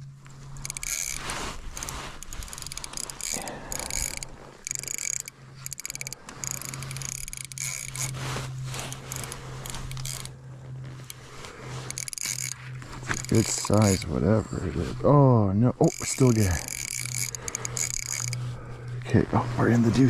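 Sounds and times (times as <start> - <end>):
fishing reel ratcheting: 0.0 - 14.6, 15.6 - 19.8
low steady hum: 0.0 - 20.0.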